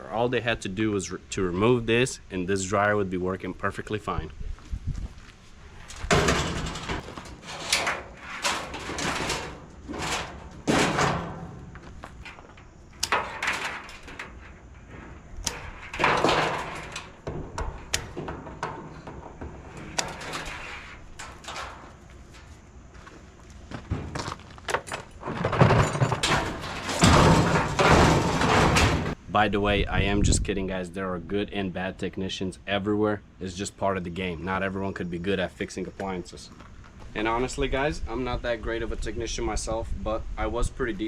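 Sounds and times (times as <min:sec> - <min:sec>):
sheet metal knocking and clanking: 0:06.0 - 0:22.6, 0:23.8 - 0:29.2.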